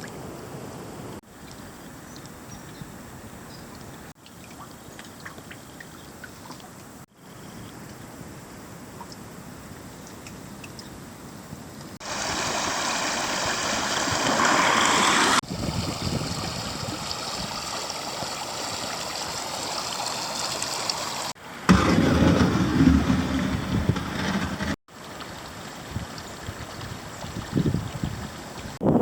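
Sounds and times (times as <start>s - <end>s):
creek water rushing over riffles: 12.0s - 21.4s, 24.9s - 28.8s
wind buffeting microphone: 13.2s - 17.8s, 25.8s - 29.0s.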